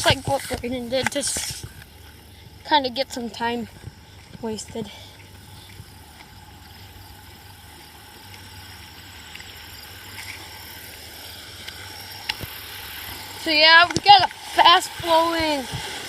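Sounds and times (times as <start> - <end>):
fast-flowing creek rushing: 8.9 - 16.0.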